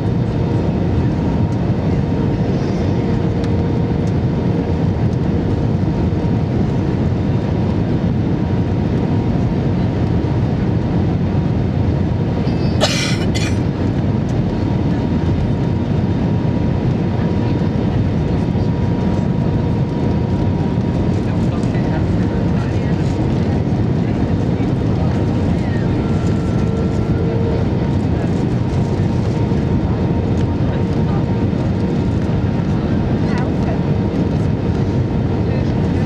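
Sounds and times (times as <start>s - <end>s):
airliner engines and airflow rumble: 0.0s - 36.0s.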